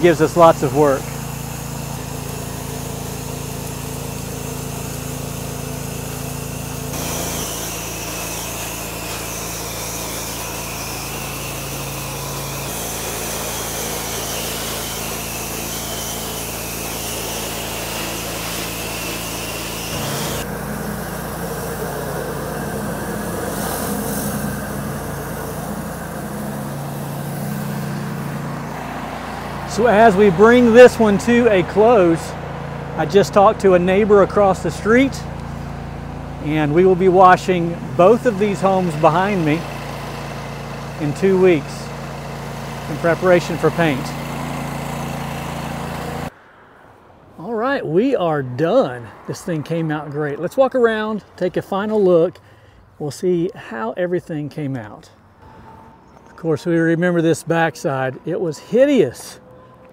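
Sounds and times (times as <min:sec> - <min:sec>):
spraying water hiss: 0:00.0 - 0:30.9
pressure washer engine running: 0:00.0 - 0:46.3.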